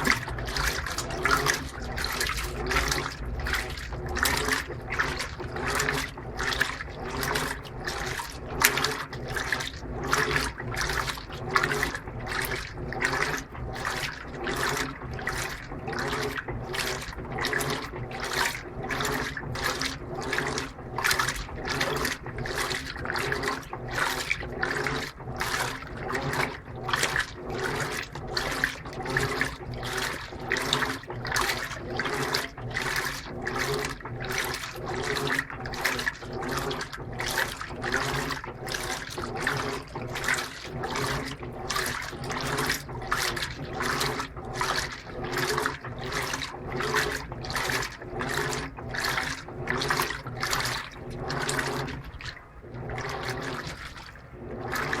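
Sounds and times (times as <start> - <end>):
motor hum: 0.0 - 55.0
washing machine agitating in water: 0.0 - 55.0.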